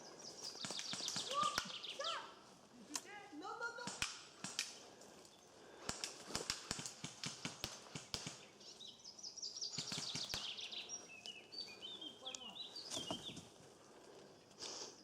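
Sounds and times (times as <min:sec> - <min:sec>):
songbird singing: 0:00.0 - 0:02.5, 0:08.2 - 0:15.0
sharp irregular clicks and snaps: 0:00.4 - 0:01.9, 0:03.8 - 0:08.6.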